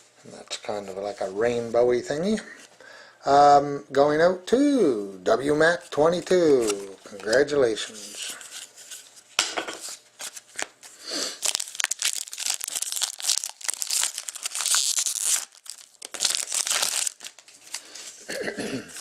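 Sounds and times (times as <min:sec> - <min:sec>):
wrapper crinkling and tearing: 0:11.4 - 0:18.1.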